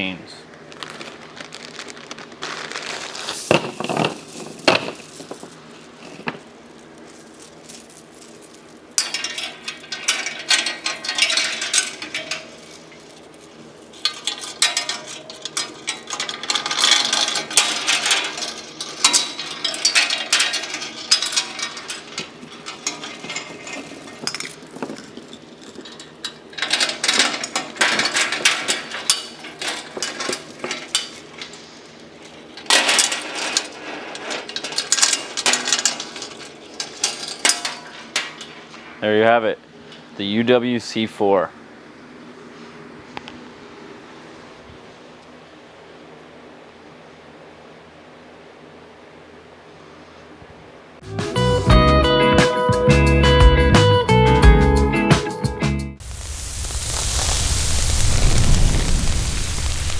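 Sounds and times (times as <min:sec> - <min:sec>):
small metal chains rattling: 0:00.9 - 0:39.0.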